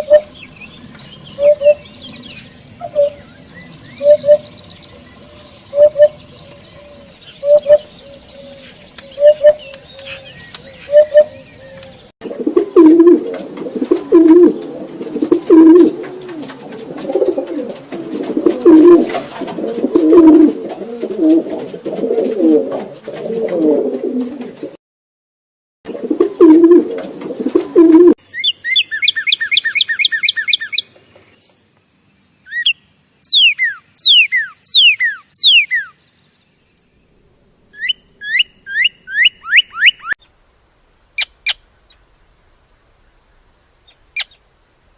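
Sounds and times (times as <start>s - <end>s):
pigeon cooing: 4.0s - 4.4s, 10.8s - 24.8s, 25.9s - 28.2s
bird high falling chirps: 32.5s - 36.0s.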